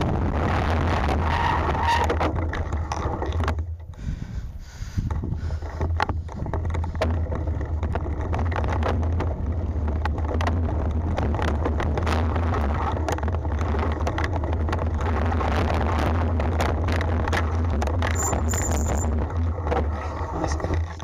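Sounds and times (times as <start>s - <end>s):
bike rattling and knocking: 2.1s - 4.0s, 5.0s - 21.0s
wind on the microphone: 4.0s - 8.0s
bike tyres rumbling on dirt: 5.1s - 20.3s.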